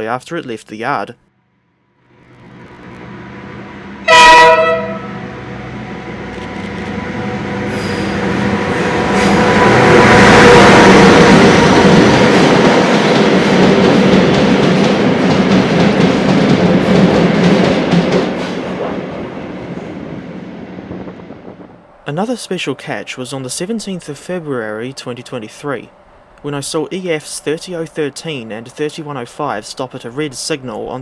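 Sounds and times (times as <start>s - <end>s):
train engine and wheels passing: 2.0s - 31.0s
train horn blast: 3.0s - 6.3s, 6.9s - 11.9s.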